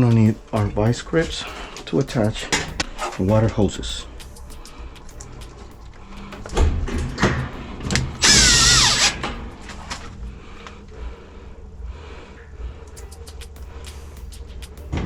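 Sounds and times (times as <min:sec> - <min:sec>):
cordless drill whining: 0:08.2 - 0:09.2.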